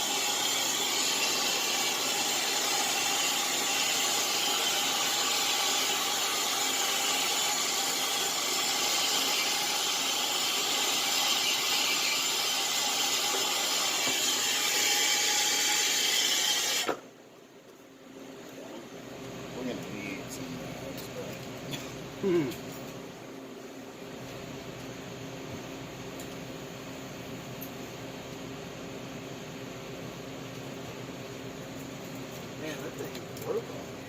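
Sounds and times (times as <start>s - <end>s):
torch flame hissing: 0.0s - 17.1s.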